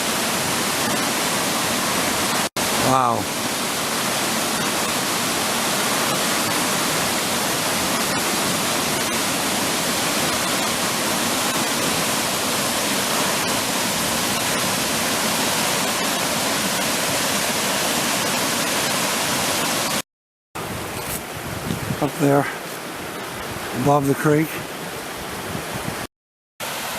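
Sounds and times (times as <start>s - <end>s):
waterfall rushing: 0.0s - 20.0s, 26.6s - 26.9s.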